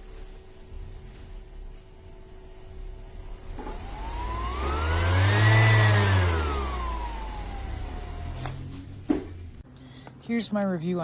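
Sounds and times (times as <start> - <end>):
motor whine: 1.6 - 9.6.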